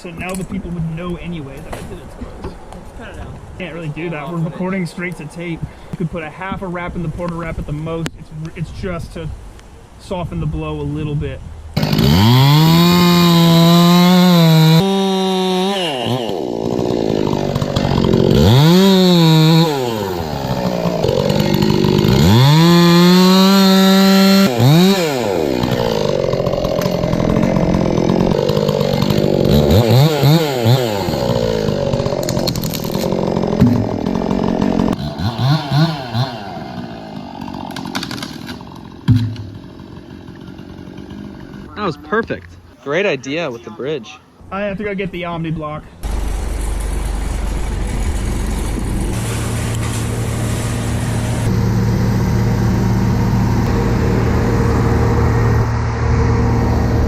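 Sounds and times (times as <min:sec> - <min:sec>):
chainsaw revving: 0:11.8 - 0:41.9, 0:46.0 - 0:57.0.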